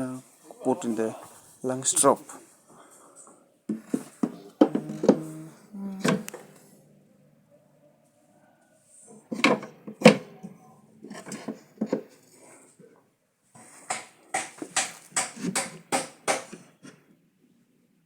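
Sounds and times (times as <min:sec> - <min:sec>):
wooden hive frames knocking: 0:04.2 - 0:06.3.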